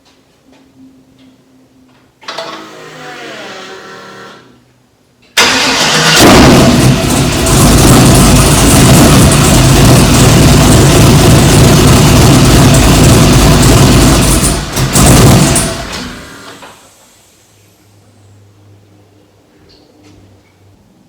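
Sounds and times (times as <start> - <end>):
pickup truck engine rumbling: 5.6 - 15.9.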